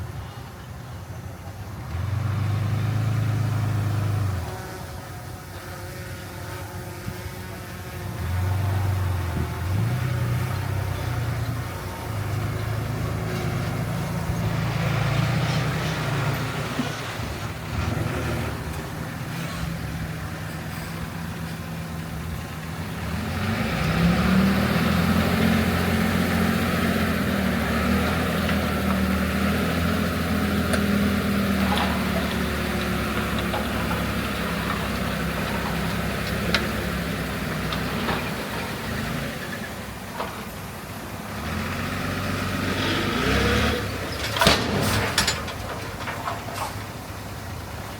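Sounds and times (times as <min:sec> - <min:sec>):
heavy machinery diesel engine: 0:00.0 - 0:05.5, 0:07.6 - 0:47.9
rough rasping noise: 0:25.4 - 0:38.5.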